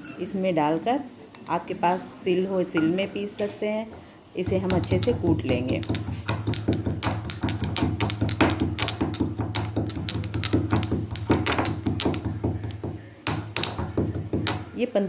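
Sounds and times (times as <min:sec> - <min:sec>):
pestle pounding in mortar: 0:04.4 - 0:14.7.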